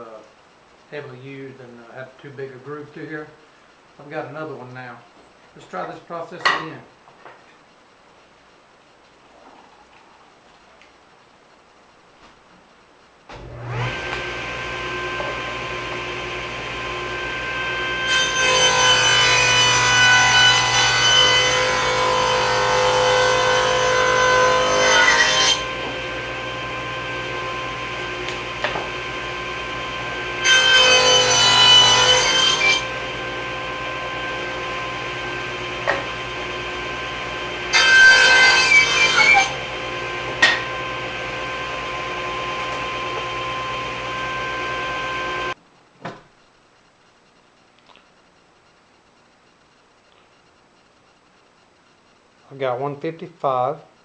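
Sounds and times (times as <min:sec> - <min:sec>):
table saw cutting wood: 0:13.4 - 0:45.6.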